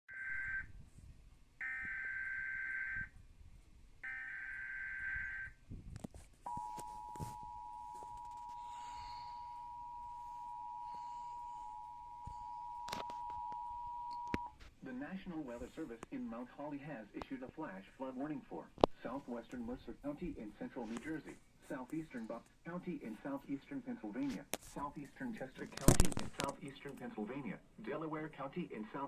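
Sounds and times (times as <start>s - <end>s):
steady two-tone attention signal: 6.5s - 14.5s.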